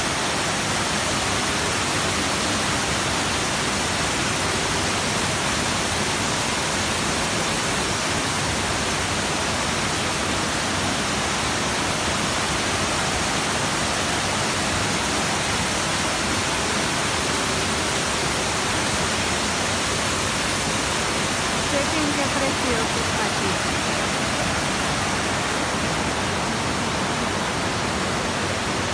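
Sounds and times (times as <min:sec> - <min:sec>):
waterfall rushing: 0:00.0 - 0:28.9.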